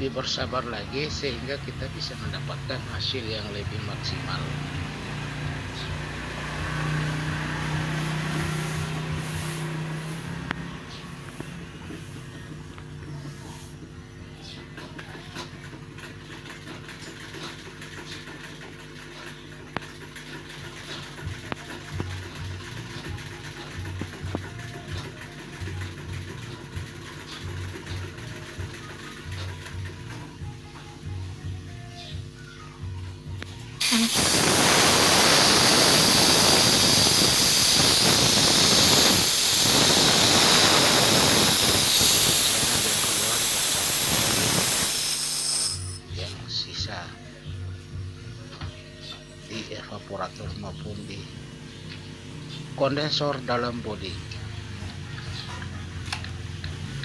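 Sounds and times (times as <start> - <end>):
electric motor hum: 4.4 - 13.3, 33.8 - 46.2
gas hissing from pipe: 6.7 - 12.2, 33.8 - 46.2.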